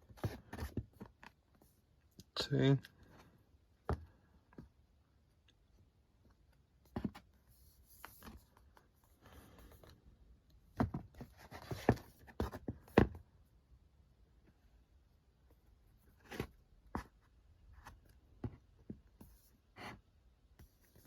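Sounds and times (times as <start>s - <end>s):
books tapping and knocking: 0.0s - 1.4s, 3.8s - 4.7s, 6.8s - 7.4s, 10.7s - 13.3s, 16.2s - 20.0s.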